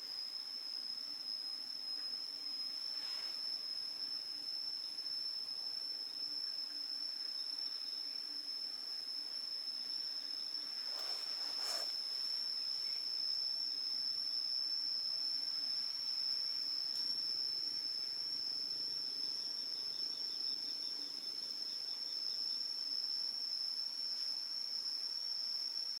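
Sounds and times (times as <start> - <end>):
high-pitched insect drone: 0.0 - 26.0
pulsing lower insect call: 0.0 - 26.0.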